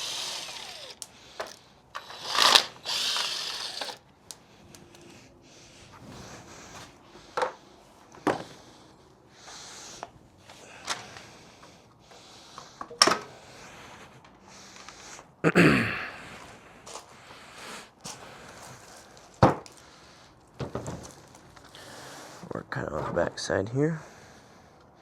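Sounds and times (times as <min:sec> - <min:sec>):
hand tools clicking and knocking: 0:00.0 - 0:04.0
metal parts clattering: 0:00.0 - 0:04.0.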